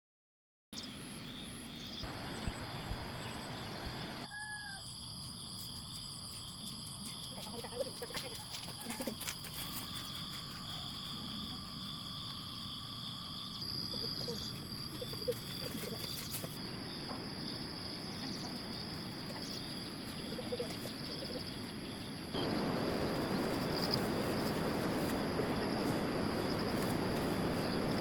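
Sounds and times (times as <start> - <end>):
insects chirring: 0.8 - 28.0
hiss-like background noise: 8.5 - 28.0.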